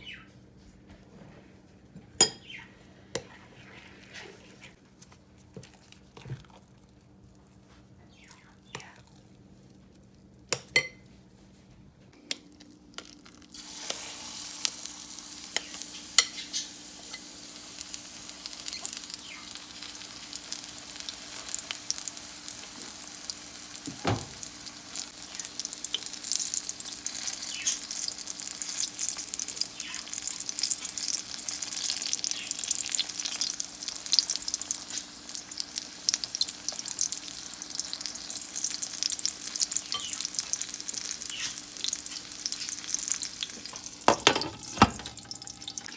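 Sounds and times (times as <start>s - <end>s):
batter sizzling in hot oil: 13.2s - 45.9s.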